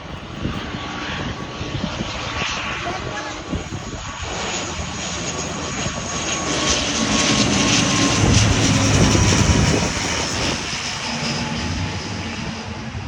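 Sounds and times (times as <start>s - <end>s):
airplane passing low overhead: 0.0s - 13.0s.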